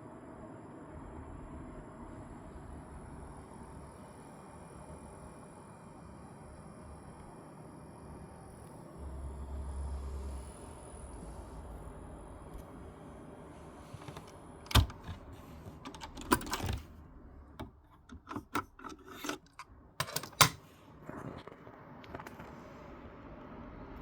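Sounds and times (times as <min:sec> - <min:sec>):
cassette deck button clicks: 0:14.0 - 0:16.9, 0:17.6 - 0:20.6.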